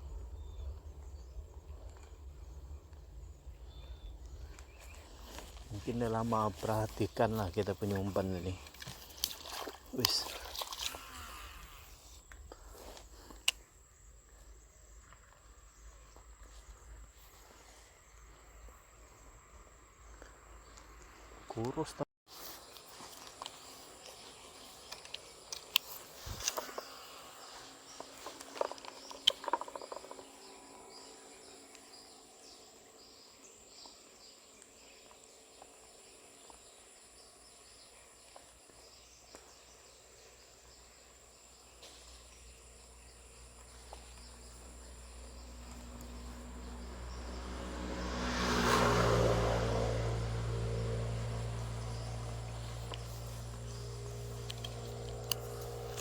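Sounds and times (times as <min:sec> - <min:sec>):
insects: 0:00.0 - 0:56.0
vehicle engine passing: 0:44.6 - 0:56.0.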